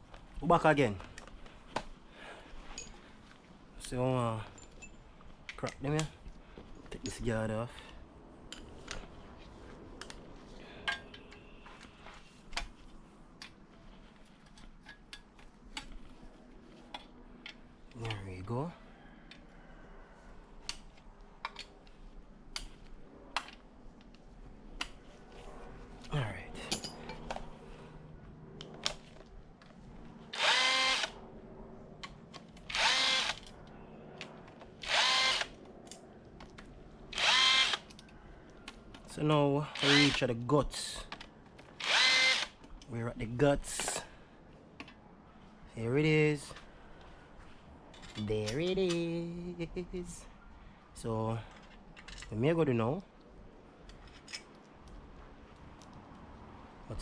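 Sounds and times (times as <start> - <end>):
tools and bolts clinking on metal: 2.6 - 3.2, 3.8 - 7.2, 10.8 - 11.9, 26.6 - 27.4, 47.9 - 49.0, 51.4 - 52.4, 53.8 - 54.6.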